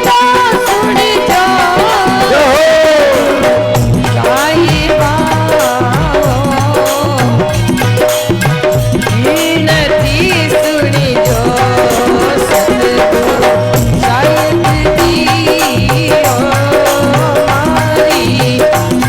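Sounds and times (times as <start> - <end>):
drum beating: 0.0 - 19.0.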